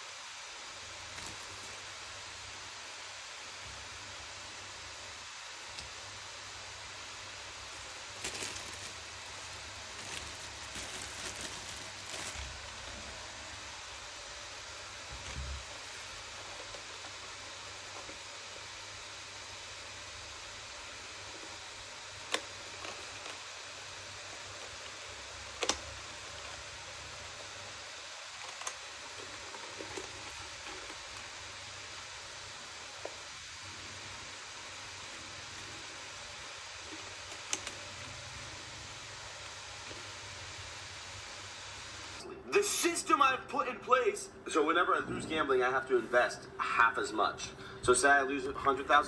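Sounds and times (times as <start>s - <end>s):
steady hiss: 0.0s - 43.2s
rustling handling noise: 1.0s - 2.1s, 7.5s - 14.4s, 21.2s - 40.8s.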